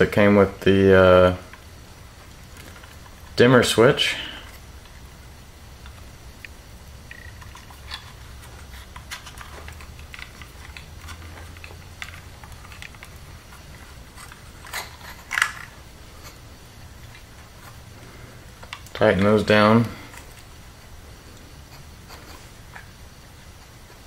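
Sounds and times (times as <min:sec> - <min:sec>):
low steady hum: 0:00.0 - 0:24.0
wire nuts clicking and scraping: 0:05.8 - 0:24.0.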